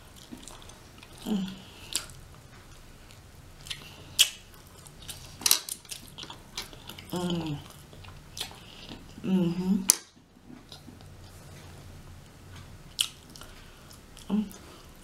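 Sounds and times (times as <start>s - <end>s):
person humming: 1.2s - 1.7s, 7.1s - 7.7s, 9.2s - 9.9s, 14.3s - 14.6s
mouth clicks and smacks chewing: 3.1s - 9.2s, 12.9s - 14.6s.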